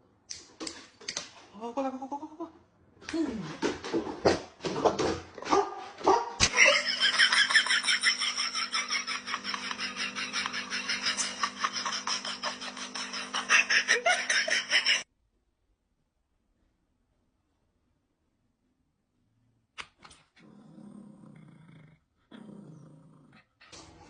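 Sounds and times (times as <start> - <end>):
dog barking and yipping: 5.5 - 6.4.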